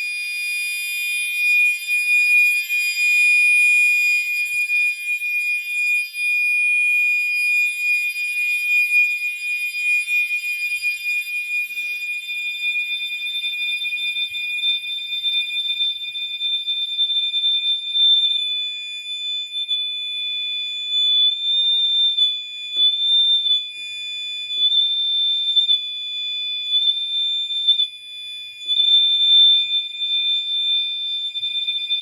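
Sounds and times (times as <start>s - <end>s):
high-pitched fire alarm horns: 0.0s - 16.0s.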